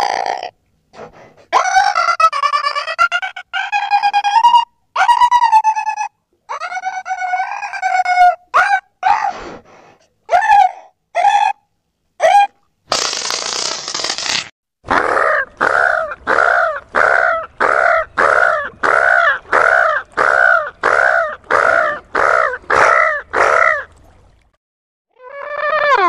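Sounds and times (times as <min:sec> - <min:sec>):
creature calls bending in pitch: 0:00.0 - 0:00.5, 0:12.2 - 0:23.8.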